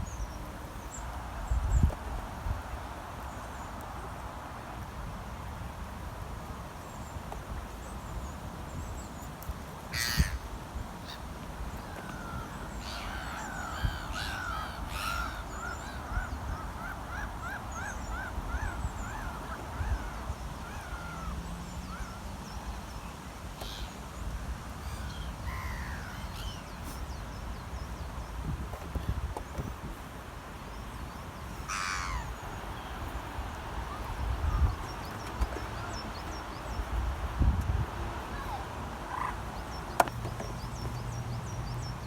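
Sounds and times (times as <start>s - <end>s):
birds calling: 8.8s - 22.9s, 23.5s - 42.0s
loud harsh bird call: 9.9s - 11.2s, 12.0s - 19.5s, 31.6s - 33.1s.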